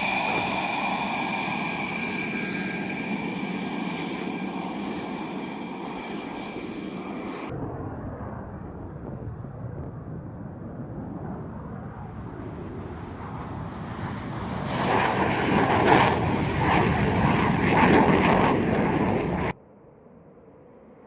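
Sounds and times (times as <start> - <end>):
fighter jet taking off: 0.0 - 19.6.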